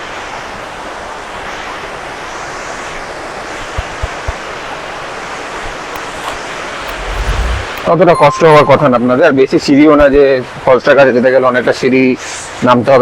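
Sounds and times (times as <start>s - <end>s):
low thumps: 6.9s - 8.0s.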